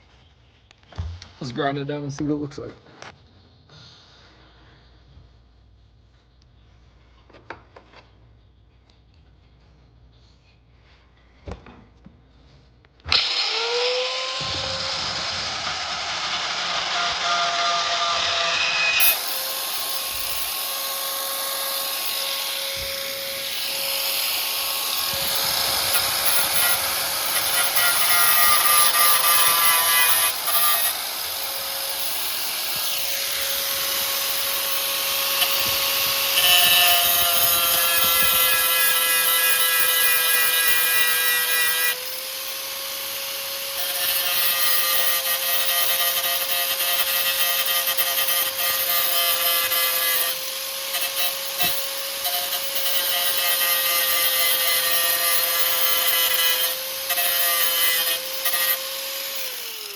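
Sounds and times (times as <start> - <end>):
grinder grinding metal: 13.1 - 59.9.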